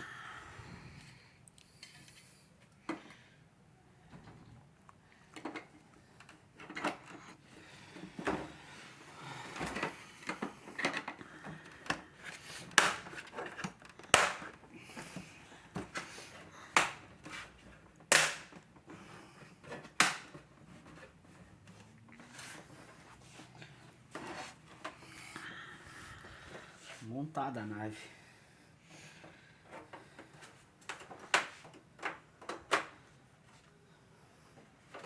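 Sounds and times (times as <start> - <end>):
plastic pieces snapping into place: 12.7 - 14.7, 16.8 - 17.1, 18.0 - 18.6, 19.9 - 20.4.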